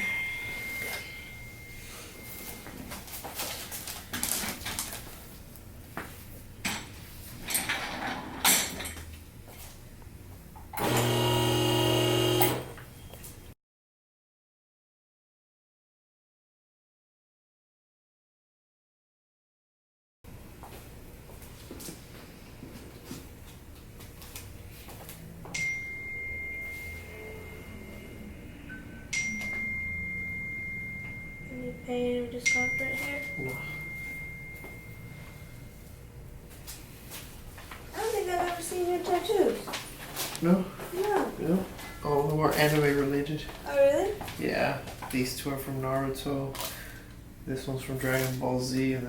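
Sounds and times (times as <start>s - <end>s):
high ringing tone: 0.0s - 3.4s, 25.4s - 36.0s
rustling and handling noise: 0.7s - 7.5s, 32.8s - 45.2s, 45.8s - 47.2s, 47.9s - 48.6s
small electric motor humming: 10.8s - 12.8s.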